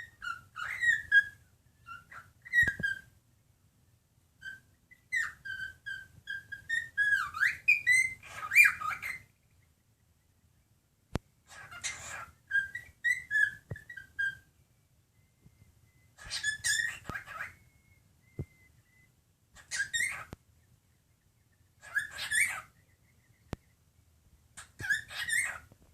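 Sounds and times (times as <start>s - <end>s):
cockatiel whistling and chattering: 0.0s - 3.1s, 4.4s - 9.5s, 11.4s - 14.5s, 15.4s - 20.4s, 21.4s - 23.8s, 24.6s - 25.8s.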